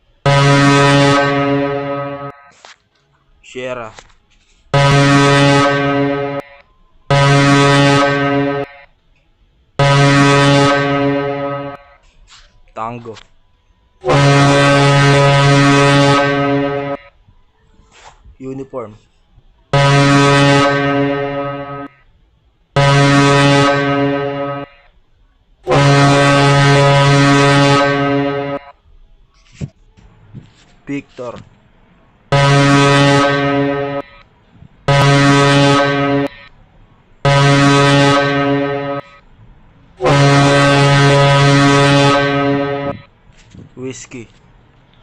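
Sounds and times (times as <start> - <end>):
deep horn blasts: 0.2 - 2.4, 4.7 - 8.9, 9.7 - 12.0, 14.0 - 17.1, 19.7 - 22.0, 22.8 - 24.8, 25.6 - 28.7, 32.3 - 36.4, 37.2 - 43.1
buzzy morse code tone: 0.2 - 2.6, 4.4 - 9.0, 9.8 - 13.0, 14.0 - 17.2, 19.7 - 22.1, 22.8 - 25.0, 25.6 - 28.8, 32.3 - 36.6, 37.2 - 39.3, 40.0 - 44.4.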